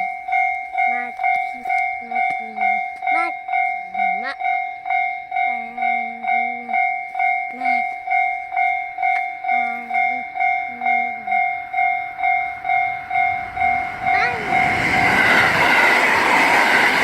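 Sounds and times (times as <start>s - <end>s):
electronic crossing bell: 0.0s - 17.0s
low held tone: 5.4s - 17.0s.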